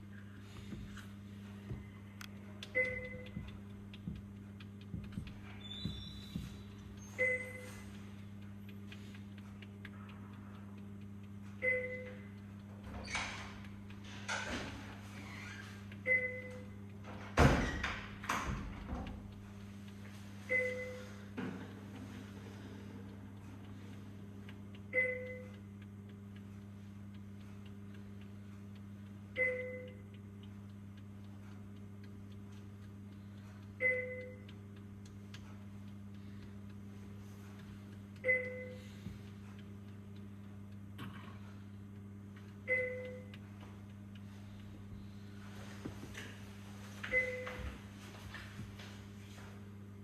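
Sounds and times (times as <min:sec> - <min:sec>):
low hum: 0:00.0 - 0:50.0
two-tone alarm beep: 0:02.8 - 0:03.5, 0:07.1 - 0:07.8, 0:11.6 - 0:12.2, 0:20.5 - 0:21.2, 0:24.9 - 0:25.5, 0:29.4 - 0:30.0, 0:33.8 - 0:34.4, 0:38.2 - 0:38.9, 0:42.7 - 0:43.3.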